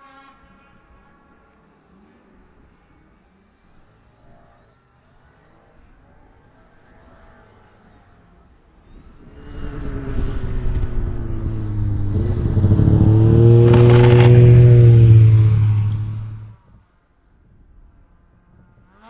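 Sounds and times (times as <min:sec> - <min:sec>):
snowmobile engine approaching: 0:09.0 - 0:16.6.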